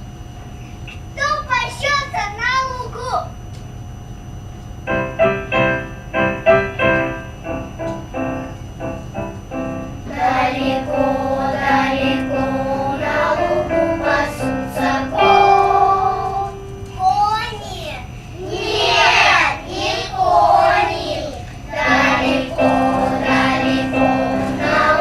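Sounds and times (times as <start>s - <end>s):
piano chords: 4.8s - 17.7s, 18.4s - 25.0s
children's choir singing: 10.1s - 16.9s, 18.4s - 25.0s.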